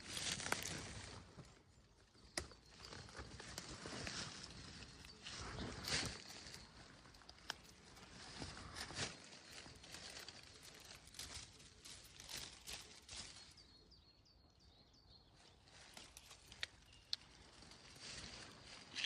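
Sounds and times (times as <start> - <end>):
rustling through undergrowth: 0.0 - 14.0, 15.3 - 19.0
high bird chirps: 13.2 - 19.0.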